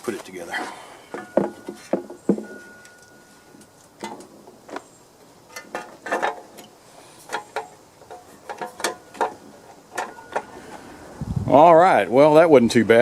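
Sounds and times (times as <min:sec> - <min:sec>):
clicks and knocks of tools: 0:05.5 - 0:10.6.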